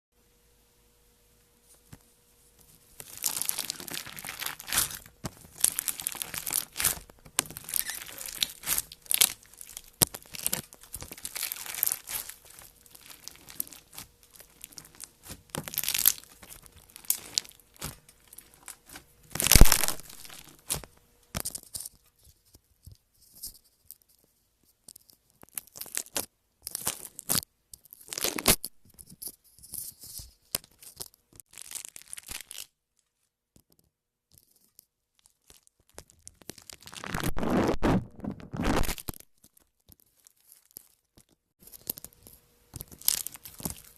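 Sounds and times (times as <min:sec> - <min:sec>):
slime and water beads squeezed: 0:03.0 - 0:20.8, 0:31.5 - 0:32.7.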